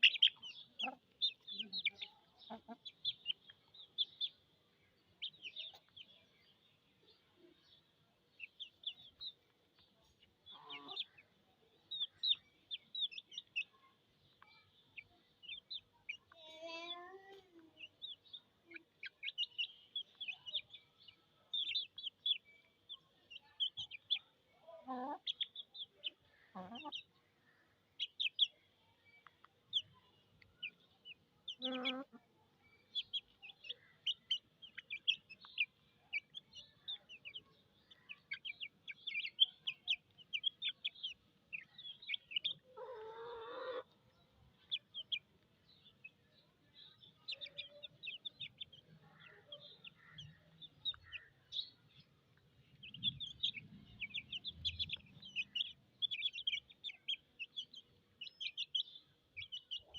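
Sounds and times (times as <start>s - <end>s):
chicks peeping: 0.0s - 59.9s
hen calling: 42.5s - 43.9s.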